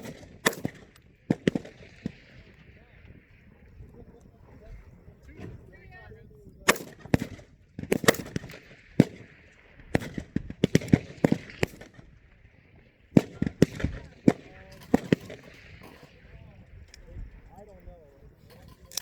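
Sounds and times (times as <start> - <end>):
rifle shots: 0.0 - 2.6, 6.7 - 12.5, 13.1 - 16.5.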